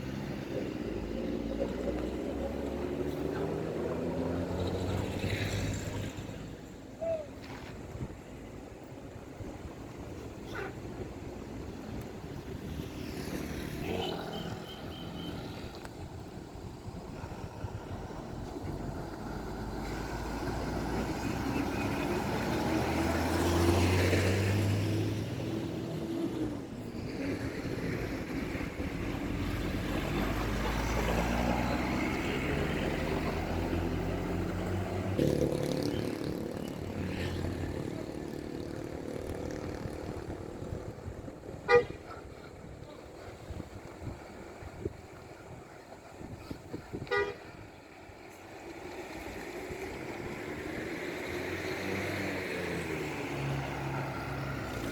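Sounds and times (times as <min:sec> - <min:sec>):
road vehicles passing: 0:00.0 - 0:54.9.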